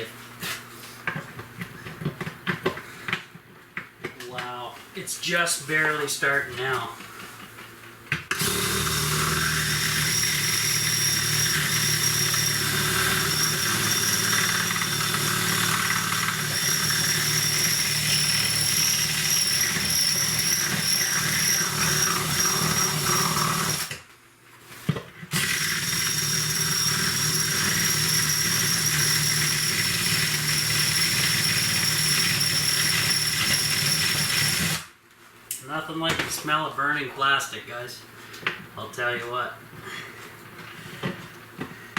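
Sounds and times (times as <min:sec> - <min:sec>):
power tool whining cutting plastic: 0:08.3 - 0:24.0, 0:25.3 - 0:34.9.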